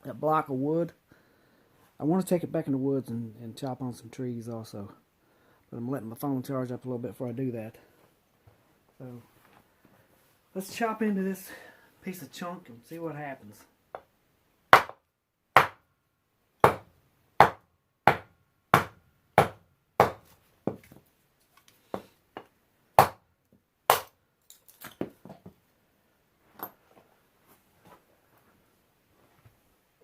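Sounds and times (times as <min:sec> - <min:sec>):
heavy knife chopping wood: 0:14.8 - 0:15.0, 0:15.6 - 0:15.8, 0:16.6 - 0:20.8, 0:23.0 - 0:23.2, 0:23.9 - 0:24.1.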